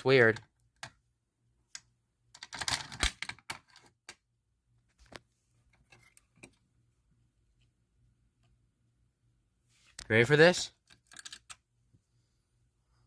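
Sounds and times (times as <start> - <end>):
clicks and rattles of alarm hardware: 2.3 - 4.2, 10.8 - 11.6.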